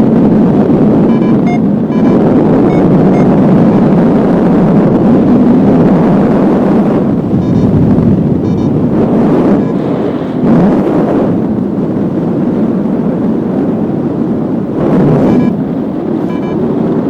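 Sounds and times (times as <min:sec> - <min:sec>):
wind buffeting microphone: 0:00.0 - 0:17.0
faint short beeps: 0:01.1 - 0:03.3, 0:16.3 - 0:16.6.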